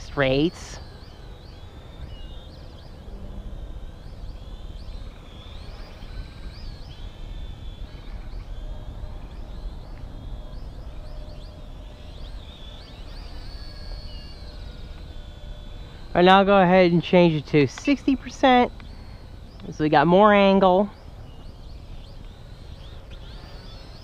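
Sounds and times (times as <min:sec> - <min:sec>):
quadcopter motors whining: 0:00.0 - 0:24.0.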